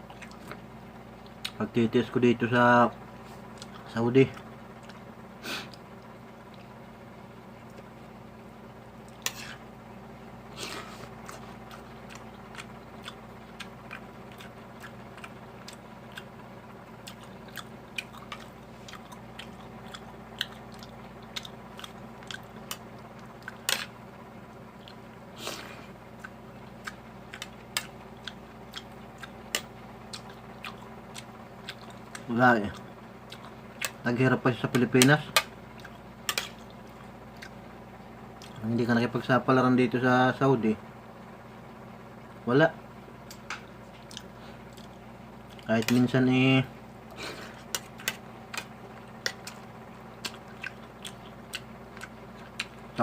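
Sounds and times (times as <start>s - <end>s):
person chewing: 0.0s - 0.6s, 3.4s - 6.8s, 10.5s - 24.0s, 24.7s - 34.0s, 35.3s - 37.7s, 38.3s - 38.6s, 43.2s - 46.0s, 47.0s - 52.9s.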